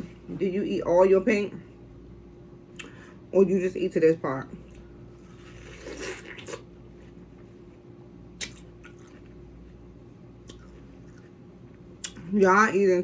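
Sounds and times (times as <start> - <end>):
faint steady hum: 0.0 - 13.0
chewing watermelon: 4.6 - 9.8, 10.4 - 12.3.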